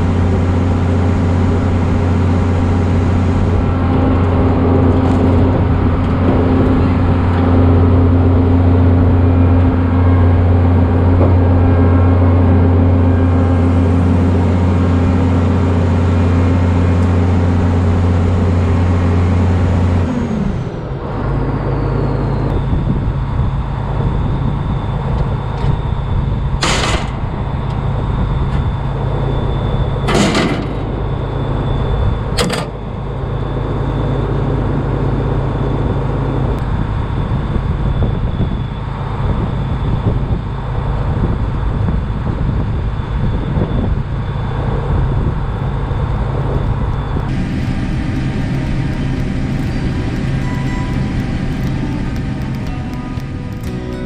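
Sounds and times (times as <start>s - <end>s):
combine engine low hum: 0.0s - 54.0s
high whine gliding down: 0.0s - 54.0s.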